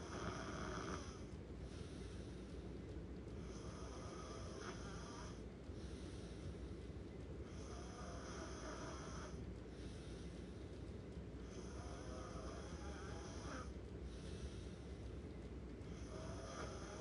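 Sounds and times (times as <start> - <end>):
person snoring: 11.5 - 13.7, 15.9 - 17.0.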